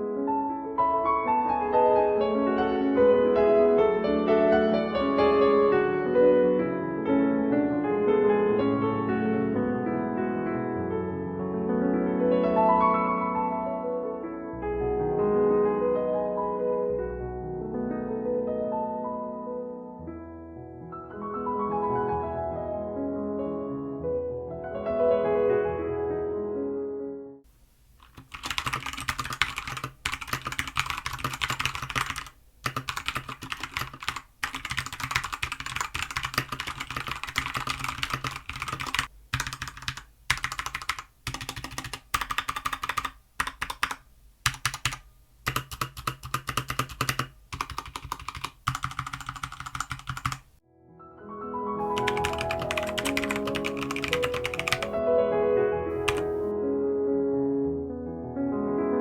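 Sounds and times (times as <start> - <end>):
music: 0.0 - 27.4, 50.6 - 59.0
mechanical keyboard typing: 28.0 - 50.5, 51.9 - 55.0, 56.0 - 56.5.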